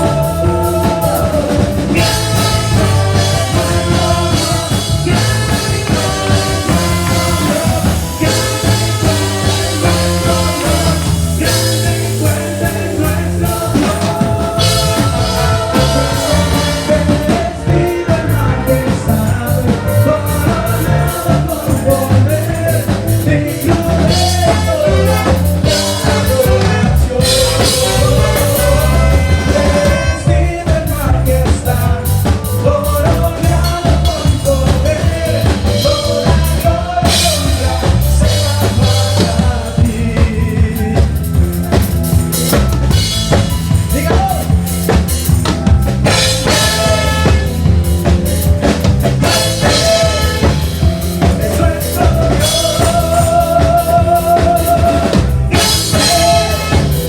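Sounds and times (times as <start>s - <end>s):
wavering melodic lead: 0.0s - 30.4s
band music: 0.0s - 57.0s
drum kit and bass beat: 0.0s - 57.0s.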